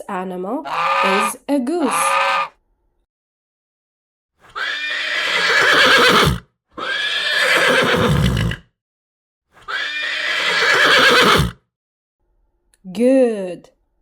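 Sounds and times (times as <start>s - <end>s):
horse neighing: 0.6s - 2.5s, 4.5s - 8.7s, 9.6s - 11.6s.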